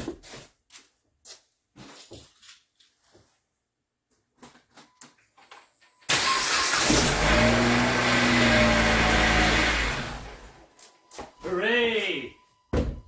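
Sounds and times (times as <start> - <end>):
car engine cranking and starting: 6.1 - 10.7
car engine running: 6.4 - 10.6.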